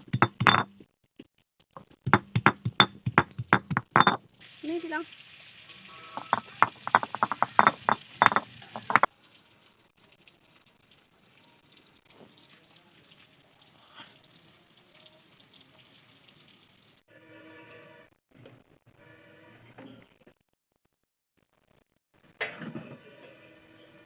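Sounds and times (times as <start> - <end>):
faint steady hiss: 4.3 - 17.0.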